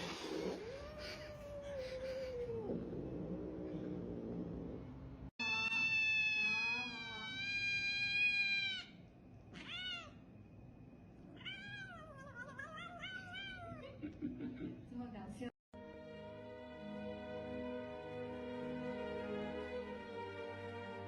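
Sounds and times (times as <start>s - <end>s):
cat meowing: 5.4s - 10.2s, 11.3s - 13.8s
low drawn-out cat cry: 5.4s - 10.3s, 11.3s - 13.8s.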